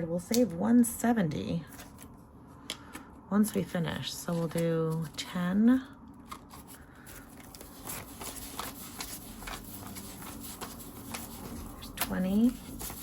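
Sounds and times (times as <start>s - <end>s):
paper banknotes rustling: 6.3s - 13.0s.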